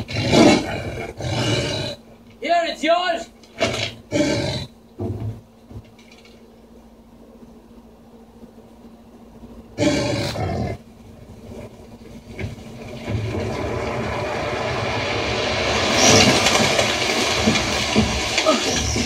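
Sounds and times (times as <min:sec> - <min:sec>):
rumbling rushing noise: 0:11.3 - 0:19.0.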